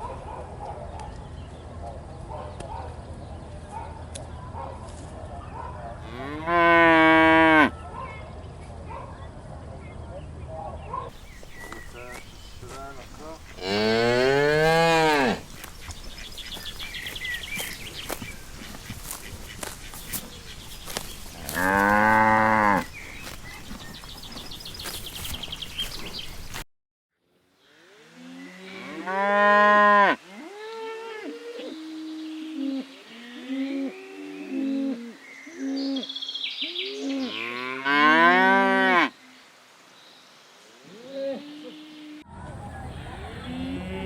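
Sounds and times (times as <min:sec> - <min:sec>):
cow mooing: 0:06.0 - 0:07.7, 0:13.2 - 0:15.5, 0:21.4 - 0:22.9
bird calls and chirps: 0:10.8 - 0:13.8, 0:15.2 - 0:26.6.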